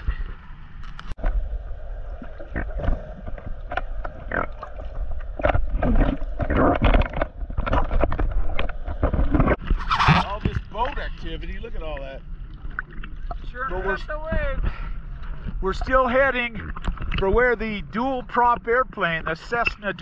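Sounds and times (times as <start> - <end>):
water splashing: 0.0 - 14.5.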